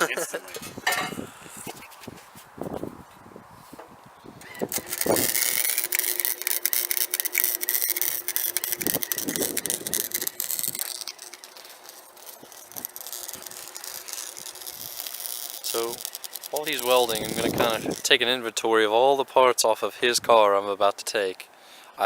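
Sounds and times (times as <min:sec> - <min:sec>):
welding arc crackling: 0:04.3 - 0:18.4
scattered clicks: 0:04.4 - 0:18.2.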